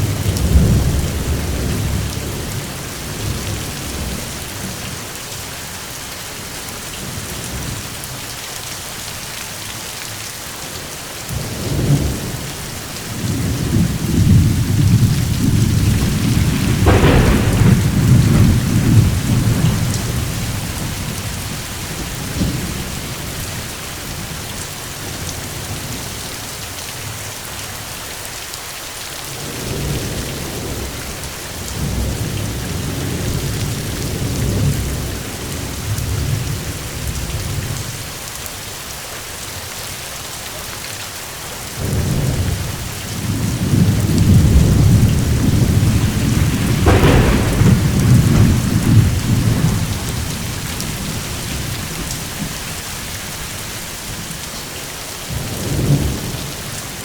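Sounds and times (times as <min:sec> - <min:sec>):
rolling thunder: 0:00.0 - 0:04.8, 0:11.3 - 0:24.5, 0:41.8 - 0:54.4, 0:55.3 - 0:56.8
heavy rain: 0:00.0 - 0:57.0
sharp thunder crack: 0:13.1 - 0:24.2, 0:41.8 - 0:52.6.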